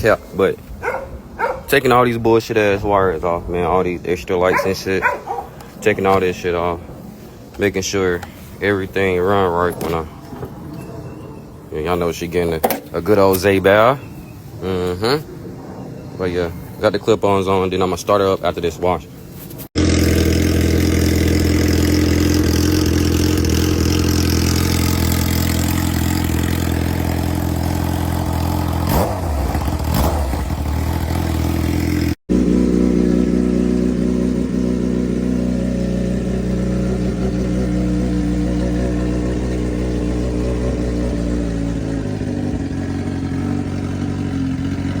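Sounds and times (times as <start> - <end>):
motorcycle engine revving: 0.0 - 2.2, 4.4 - 13.6, 19.8 - 45.0
motorcycle engine idling: 0.8 - 1.8, 4.5 - 6.4, 19.8 - 45.0.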